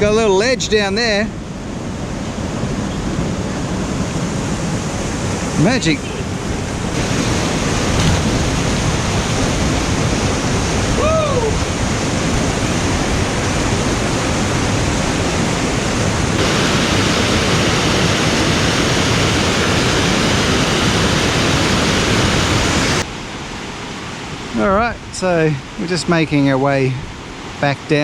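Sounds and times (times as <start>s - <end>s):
waterfall rushing: 3.8s - 23.1s.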